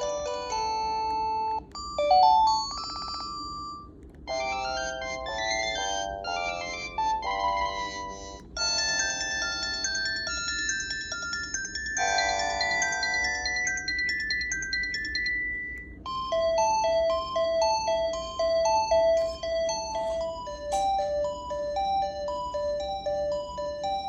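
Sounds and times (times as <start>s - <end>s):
phone ringtone melodies: 0.0s - 24.0s.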